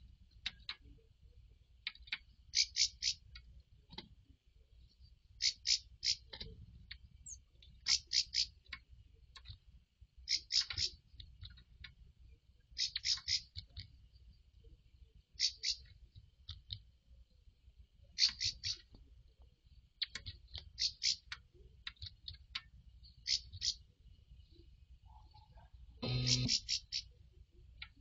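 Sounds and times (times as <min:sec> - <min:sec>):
bird calling in short phrases: 0:02.5 - 0:03.2, 0:05.4 - 0:06.4, 0:07.8 - 0:08.6, 0:10.3 - 0:11.0, 0:12.8 - 0:13.6, 0:15.4 - 0:15.9, 0:18.2 - 0:18.9, 0:23.2 - 0:23.8, 0:26.0 - 0:27.2.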